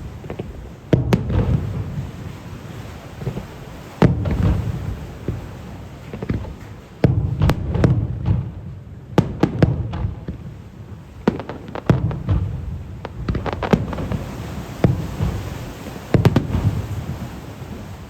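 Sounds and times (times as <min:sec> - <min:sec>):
fireworks booming: 0:00.0 - 0:18.0.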